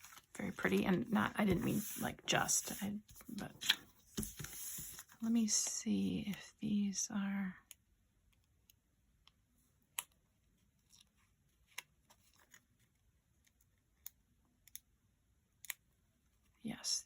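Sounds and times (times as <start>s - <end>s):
faint paper ticks and clicks: 10.8s - 14.9s.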